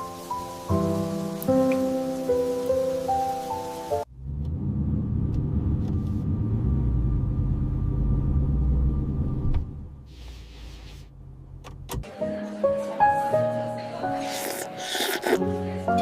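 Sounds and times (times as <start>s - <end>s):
soft music: 0.0s - 4.1s, 12.0s - 16.0s
low steady rumble: 4.1s - 12.0s.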